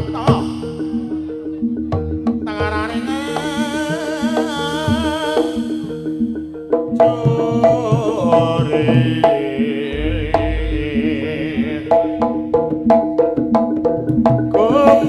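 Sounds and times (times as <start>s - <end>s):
hand drums: 0.0s - 15.0s
wavering melody line: 9.8s - 12.2s
tuned percussion notes: 9.9s - 12.8s.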